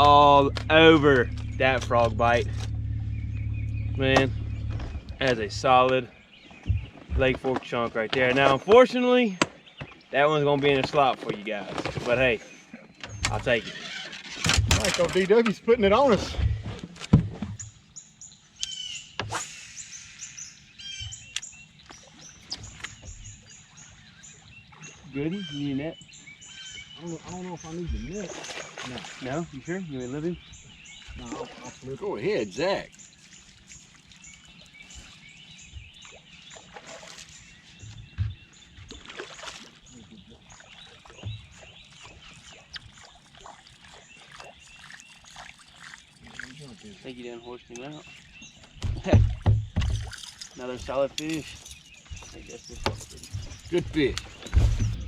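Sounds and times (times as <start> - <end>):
thumps on boat: 0.0 - 3.0, 3.8 - 12.4, 14.4 - 17.8, 37.8 - 39.6, 41.0 - 42.2, 48.7 - 51.3, 52.0 - 55.0
birds chip notes: 0.0 - 7.5, 17.6 - 55.0
fish splashing in water: 28.0 - 29.7, 31.0 - 47.1
sharp knocks: 48.8 - 50.2.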